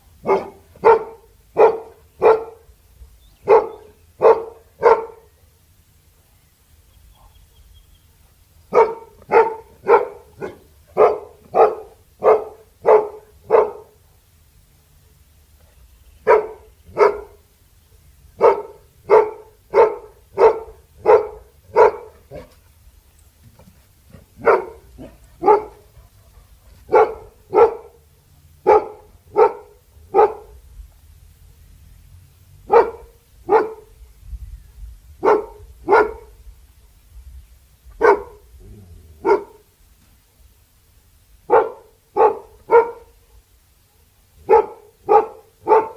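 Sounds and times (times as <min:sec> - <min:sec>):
dog barking deeply: 0:00.2 - 0:02.7, 0:03.4 - 0:05.4, 0:08.7 - 0:14.0, 0:16.2 - 0:17.5, 0:18.4 - 0:22.6, 0:24.1 - 0:30.6, 0:32.6 - 0:34.0, 0:35.2 - 0:36.4, 0:38.0 - 0:39.7, 0:41.4 - 0:43.2, 0:44.4 - 0:45.9.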